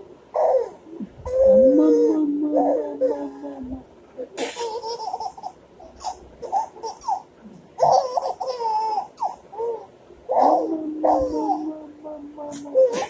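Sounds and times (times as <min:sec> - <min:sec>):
baby laughing and squealing: 0:04.4 - 0:11.7, 0:12.7 - 0:13.0.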